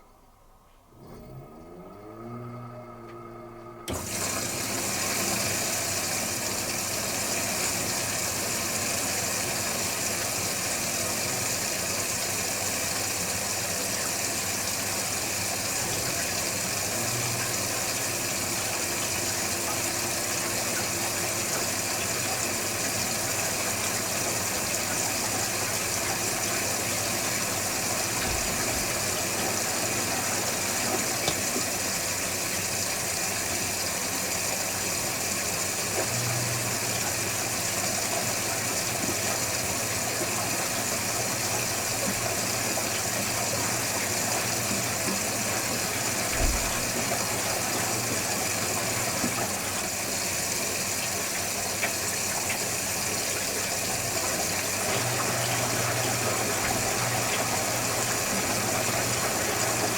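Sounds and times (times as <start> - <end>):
washing machine running: 0.0 - 59.9.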